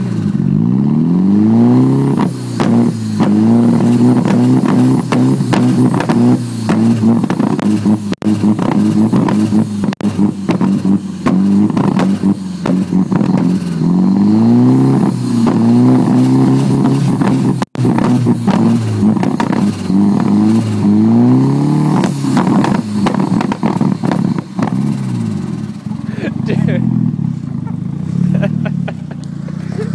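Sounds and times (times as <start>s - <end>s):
car engine idling roughly: 2.4s - 14.0s, 22.2s - 29.9s.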